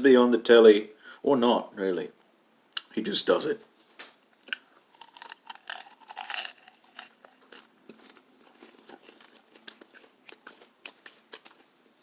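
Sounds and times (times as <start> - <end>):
person chewing crunchy snack: 4.4 - 11.6.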